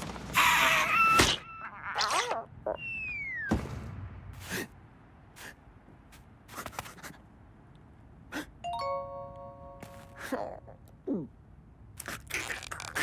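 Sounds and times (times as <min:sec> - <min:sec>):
short breathy puffs: 0:04.4 - 0:07.3
bright chime of held tones: 0:08.7 - 0:09.9.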